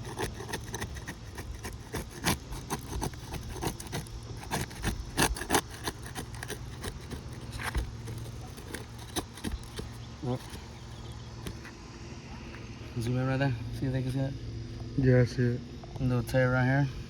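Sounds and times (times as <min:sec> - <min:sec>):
roof shingles scraping and clicking: 0:00.0 - 0:11.8
low steady hum: 0:00.0 - 0:17.0.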